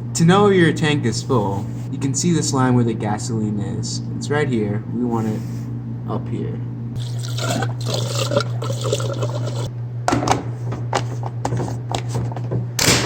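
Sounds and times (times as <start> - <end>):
steady low hum: 0.0 - 13.0
gasoline pouring into tank: 7.0 - 9.7.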